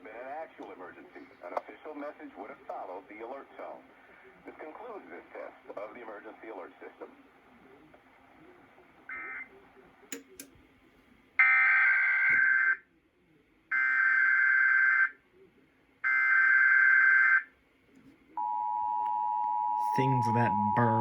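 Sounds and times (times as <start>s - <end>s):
clicks: 10.1s - 10.6s.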